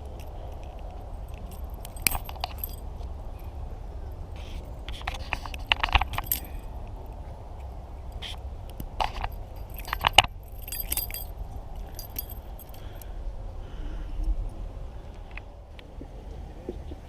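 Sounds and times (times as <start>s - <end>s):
small metallic clicks and clinks: 0.0s - 3.5s, 4.9s - 7.2s, 8.1s - 13.1s
steady low rumble: 0.0s - 17.0s.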